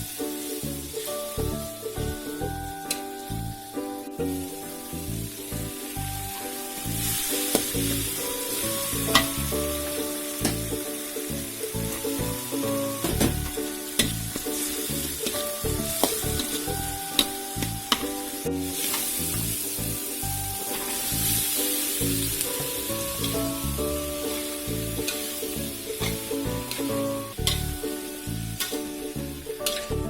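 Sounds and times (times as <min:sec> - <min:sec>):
background music with beat: 0:00.0 - 0:30.0
food sizzling in a frying pan: 0:00.0 - 0:30.0
spatula clinking against pan: 0:26.0 - 0:27.8.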